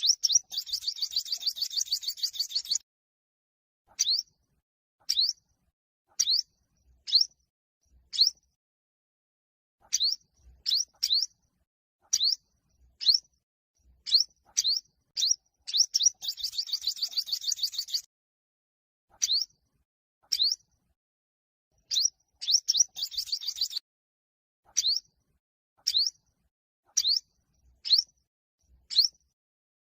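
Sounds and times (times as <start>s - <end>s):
rapid bird trill: 0.0s - 2.8s, 3.9s - 4.4s, 5.0s - 5.4s, 6.2s - 7.4s, 8.1s - 8.5s, 9.8s - 11.4s, 12.0s - 13.3s, 14.0s - 18.1s, 19.1s - 19.6s, 20.2s - 20.7s, 21.8s - 23.8s, 24.7s - 25.2s, 25.8s - 26.2s, 26.9s - 28.2s, 28.8s - 29.4s
sunbird upward-sweeping chirps: 0.0s - 2.8s, 4.0s - 4.3s, 5.1s - 5.4s, 6.2s - 7.4s, 8.1s - 8.4s, 9.8s - 11.3s, 12.1s - 12.4s, 13.0s - 13.2s, 14.0s - 18.1s, 19.2s - 19.5s, 20.3s - 20.6s, 21.8s - 23.8s, 24.7s - 25.0s, 25.9s - 26.1s, 27.0s - 28.1s, 28.9s - 29.3s.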